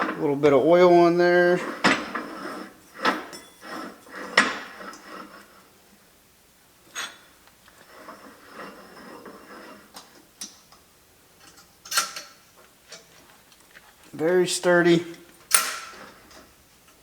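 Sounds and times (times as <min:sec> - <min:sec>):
faint metal scraping and rubbing: 0:00.0 - 0:06.0, 0:06.8 - 0:17.0
metal clicks and clanks: 0:09.2 - 0:14.2, 0:15.1 - 0:17.0.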